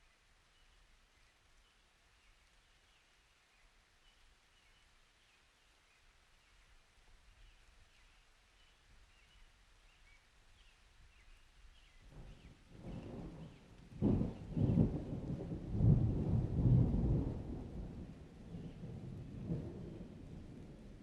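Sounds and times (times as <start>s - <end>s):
distant thunder rumble: 12.1s - 21.0s.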